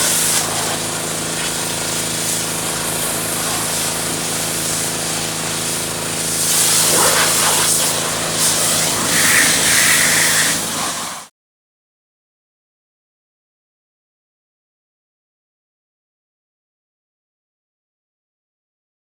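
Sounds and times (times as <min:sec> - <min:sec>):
pressure washer motor hum: 0:00.0 - 0:11.3
water jet hissing: 0:00.0 - 0:11.3.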